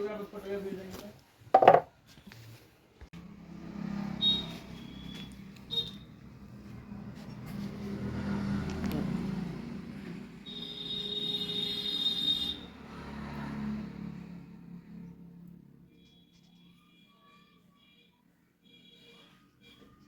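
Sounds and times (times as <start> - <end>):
traffic passing: 3.2 - 15.9.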